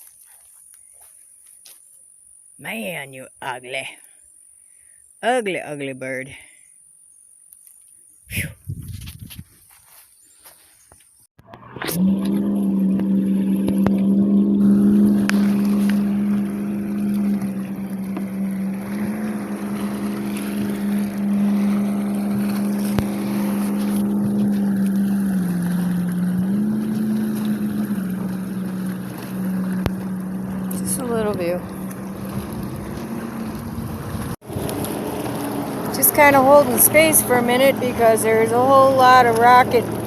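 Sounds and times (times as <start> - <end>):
motorboat engine droning: 11.4 - 40.0.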